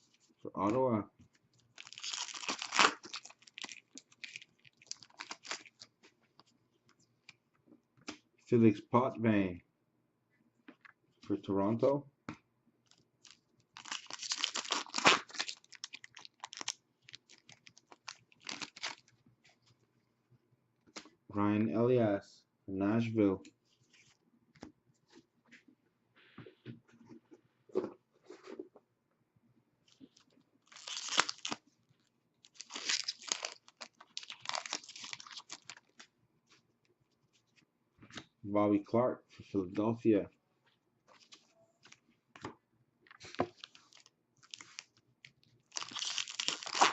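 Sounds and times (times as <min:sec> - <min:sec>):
foil wrapper crinkling and tearing: 0:01.7 - 0:05.9, 0:12.9 - 0:19.1, 0:30.7 - 0:31.6, 0:32.4 - 0:36.1, 0:43.1 - 0:45.0, 0:45.6 - 0:46.9.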